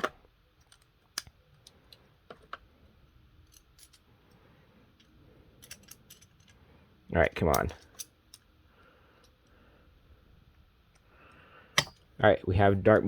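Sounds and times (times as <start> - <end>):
faint plastic parts clicking: 0.0 - 2.7.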